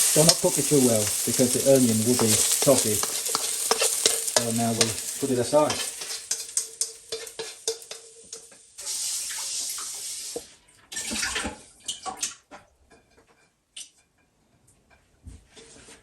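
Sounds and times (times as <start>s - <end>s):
wok clattering in sink: 0.0s - 10.0s
utensil scraping metal wok: 0.0s - 10.4s.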